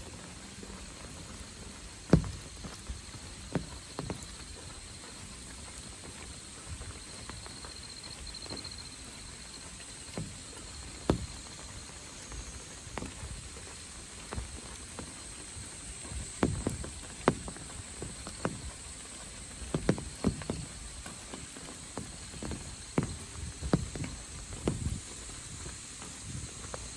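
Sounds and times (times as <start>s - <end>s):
faint rain hiss: 0.0s - 26.9s
insects trilling: 0.0s - 26.9s
sharp taps: 11.1s - 11.5s.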